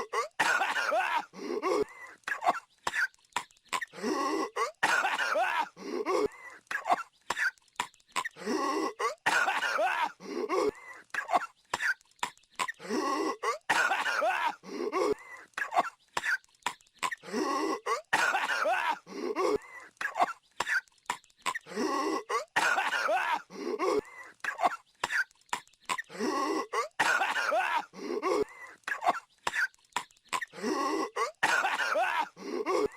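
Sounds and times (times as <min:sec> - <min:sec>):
cartoon character coughing: 0:00.0 - 0:03.1, 0:17.8 - 0:20.8, 0:25.9 - 0:29.7, 0:30.4 - 0:32.9.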